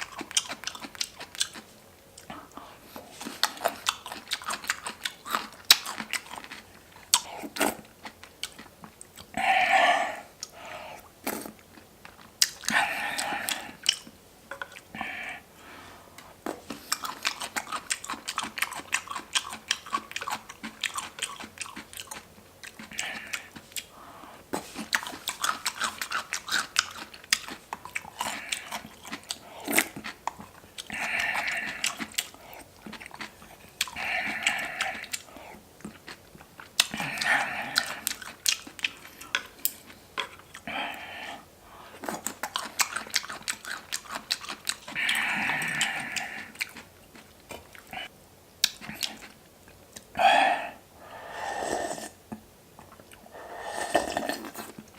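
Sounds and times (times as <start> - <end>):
crunchy chewing: 0.0 - 15.4, 16.2 - 50.3, 51.6 - 54.9
breathy sounds: 9.3 - 11.1, 12.7 - 13.9, 14.9 - 16.3, 30.9 - 32.7, 33.9 - 35.6, 36.9 - 38.2, 40.6 - 42.0, 44.9 - 46.6, 50.1 - 52.2, 53.2 - 54.6.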